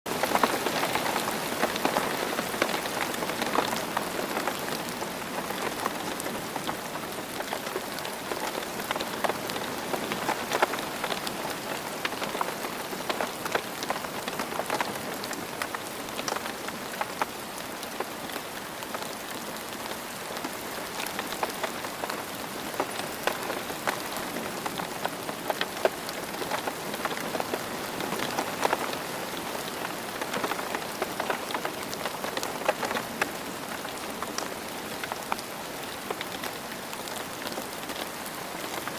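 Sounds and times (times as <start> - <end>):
steady rain patter: 0.0 - 38.9.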